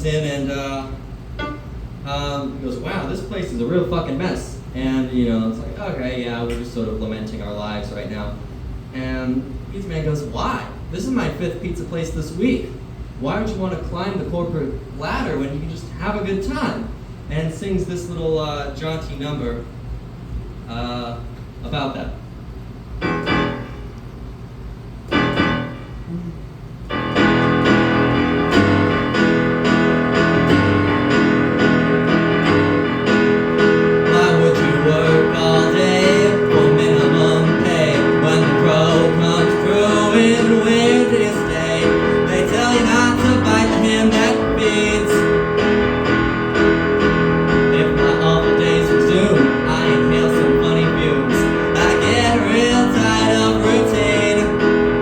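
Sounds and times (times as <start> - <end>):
jaunty piano accompaniment: 1.3 - 3.1, 23.0 - 24.0, 25.1 - 26.1, 26.9 - 55.0.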